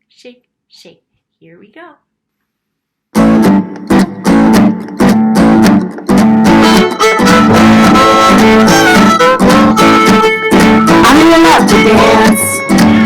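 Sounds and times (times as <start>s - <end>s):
strummed guitar: 3.2s - 13.0s
upbeat children's dance music: 6.5s - 13.0s.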